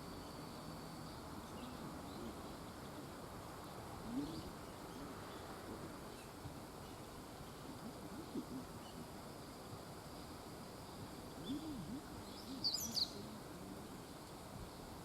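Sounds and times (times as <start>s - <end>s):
faint outdoor background noise: 0.0s - 15.0s
bird chirps: 11.4s - 13.2s
bird hooting: 11.4s - 13.2s.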